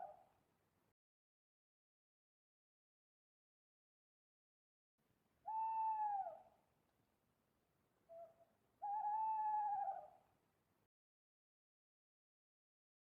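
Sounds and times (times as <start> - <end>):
bird hooting whistled call: 5.5 - 6.5, 8.1 - 10.2.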